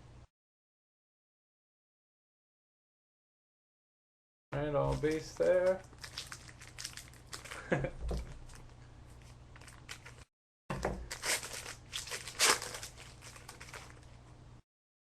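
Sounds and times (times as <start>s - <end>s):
cards rustling: 4.8s - 10.3s, 11.0s - 14.1s
wrapper crinkling and tearing: 4.8s - 10.3s, 11.0s - 14.2s.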